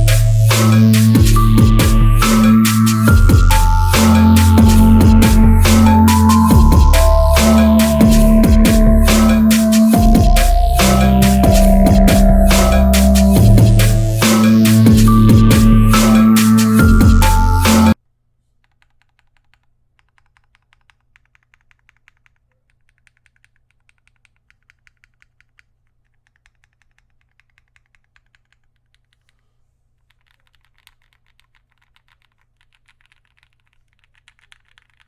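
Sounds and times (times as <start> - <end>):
typing on mechanical keyboard: 19.1 - 29.1, 30.2 - 35.0.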